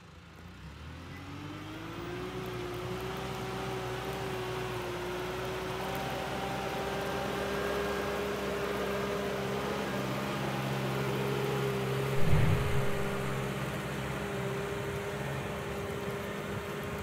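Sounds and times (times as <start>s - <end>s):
tractor engine running: 12.1s - 15.0s
low knock: 12.2s - 13.5s
mechanical whine: 12.2s - 13.6s.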